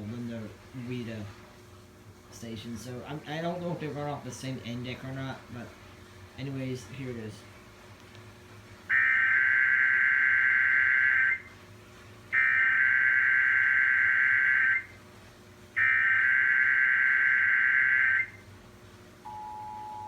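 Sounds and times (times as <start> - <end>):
screechy digital data tones: 8.9 - 11.4, 15.8 - 18.4.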